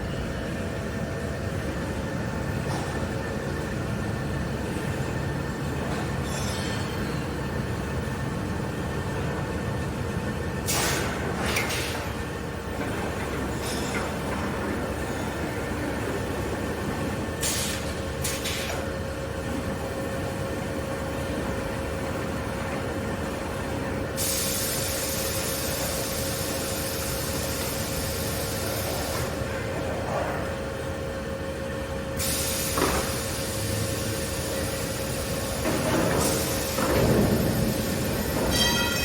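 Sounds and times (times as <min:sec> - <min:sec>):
air hissing: 0:24.2 - 0:29.5, 0:32.2 - 0:38.4.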